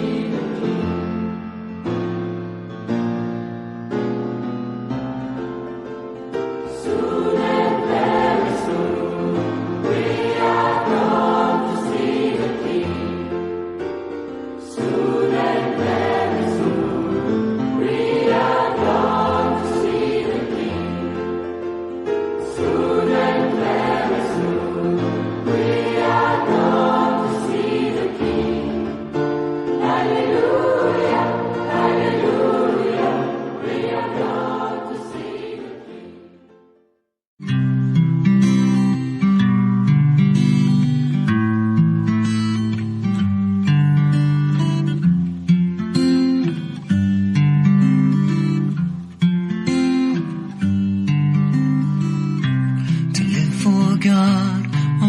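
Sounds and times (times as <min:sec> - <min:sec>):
choir singing sacred piece: 0:00.0 - 0:01.0, 0:06.6 - 0:13.7, 0:14.6 - 0:36.7.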